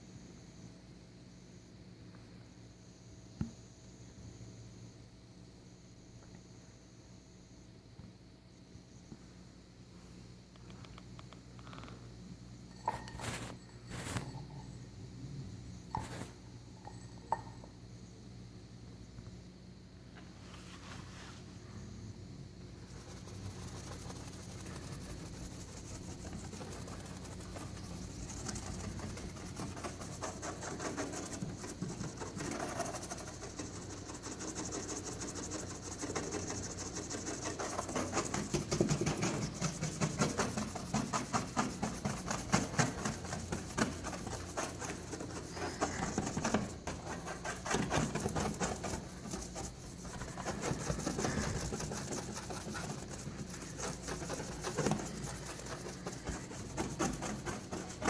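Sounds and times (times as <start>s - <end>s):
faint steady hum: 0.0s - 58.0s
cloth scrubbing car paint: 22.7s - 58.0s.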